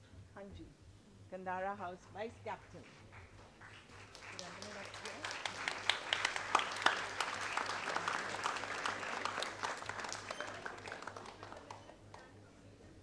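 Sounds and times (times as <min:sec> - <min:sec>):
audience clapping: 0:02.6 - 0:12.4.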